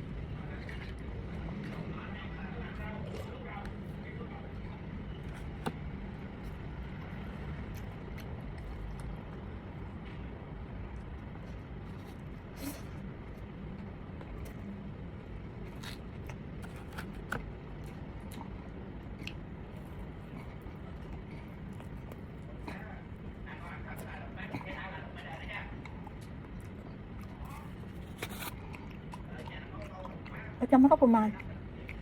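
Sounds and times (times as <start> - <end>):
low background rumble: 0.0 - 32.0
person chewing and biting: 2.7 - 10.0, 15.4 - 30.4.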